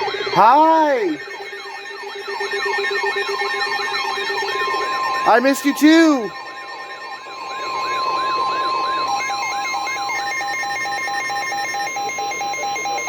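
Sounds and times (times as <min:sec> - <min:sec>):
steady warning alarm tone: 0:00.0 - 0:13.0
rapid beeping: 0:00.4 - 0:06.3
rising and falling siren: 0:00.6 - 0:10.6.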